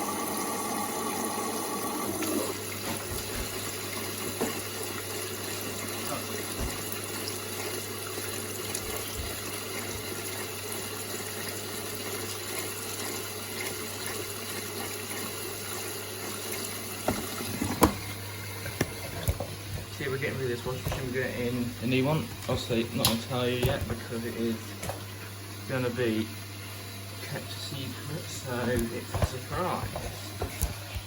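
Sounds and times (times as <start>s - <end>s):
water rushing into washing machine: 0.0s - 31.0s.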